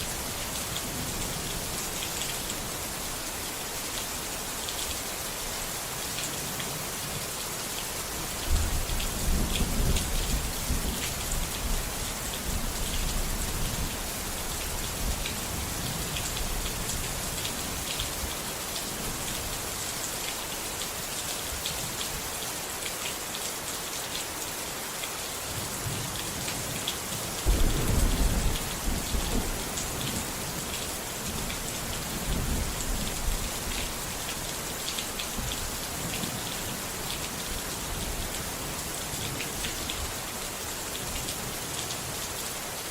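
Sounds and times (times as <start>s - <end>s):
steady rain falling: 0.0s - 42.9s
thunder rumbling: 27.4s - 29.7s.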